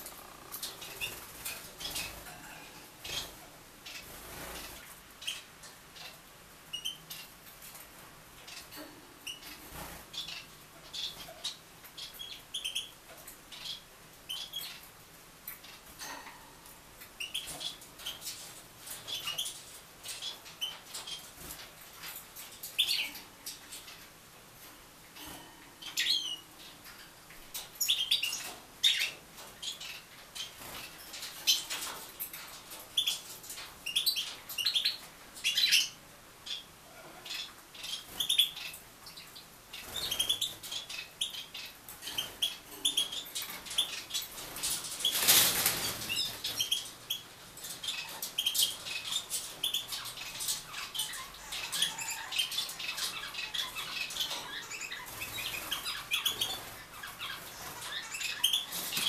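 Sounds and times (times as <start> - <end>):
small birds chirping: 0.0 - 59.0
wings fluttering: 44.3 - 46.6.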